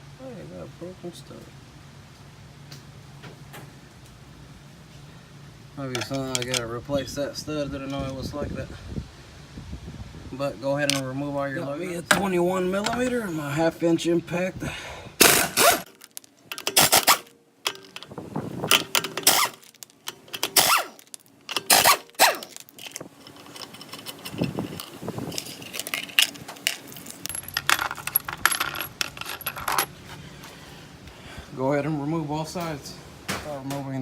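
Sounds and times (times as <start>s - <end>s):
metal tools clanking: 5.8s - 7.2s, 10.8s - 11.1s, 11.8s - 13.3s, 15.2s - 30.0s.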